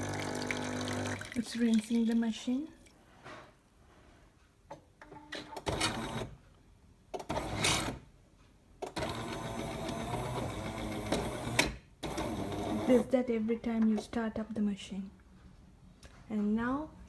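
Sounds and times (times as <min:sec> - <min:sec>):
coffee machine pump buzzing: 0:00.0 - 0:01.3.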